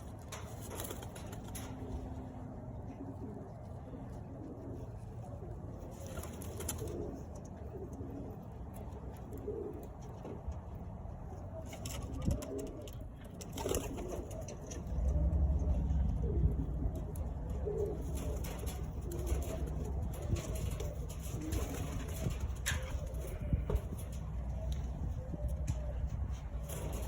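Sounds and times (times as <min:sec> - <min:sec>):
pigeons cooing: 0:00.0 - 0:27.0
low rumbling noise: 0:14.5 - 0:27.0.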